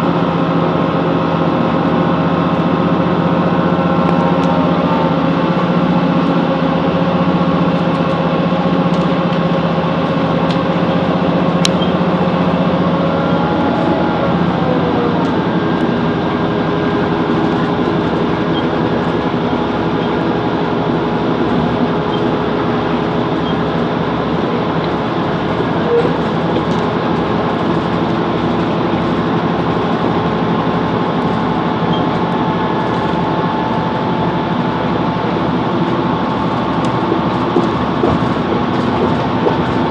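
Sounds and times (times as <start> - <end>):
diesel train engine running: 0.0 - 39.9.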